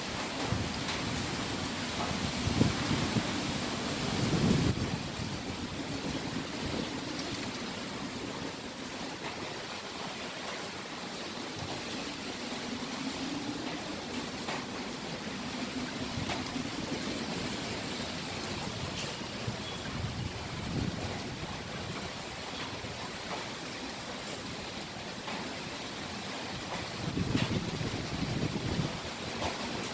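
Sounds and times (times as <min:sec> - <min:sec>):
strong wind blowing: 0:00.0 - 0:08.6, 0:15.0 - 0:22.2, 0:26.8 - 0:29.2.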